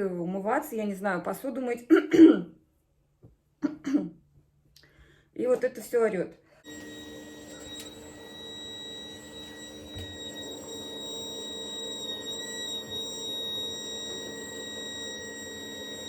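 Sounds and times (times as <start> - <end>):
water pipes whistling: 6.6 - 16.0.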